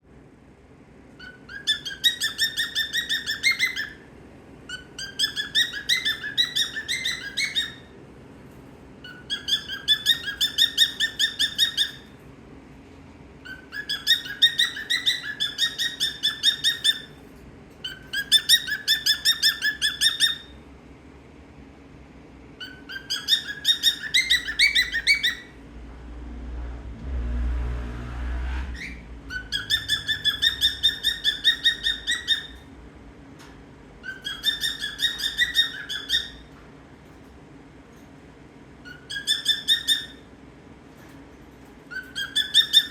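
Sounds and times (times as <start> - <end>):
parrot chirping: 1.2 - 8.0, 9.0 - 12.2, 13.4 - 20.6, 22.6 - 25.7, 28.7 - 32.8, 34.0 - 36.6, 38.7 - 40.4, 41.8 - 42.9
low rumble: 25.6 - 31.1.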